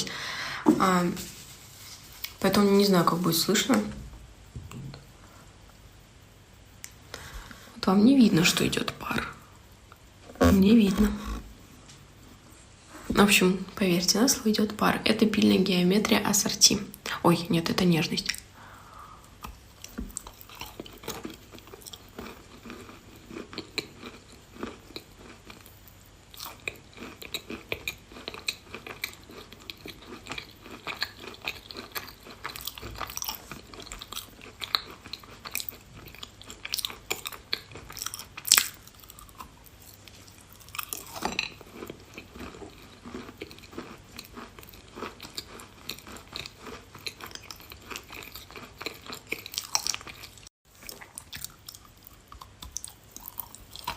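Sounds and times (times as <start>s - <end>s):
person chewing chalk: 26.3s - 53.9s.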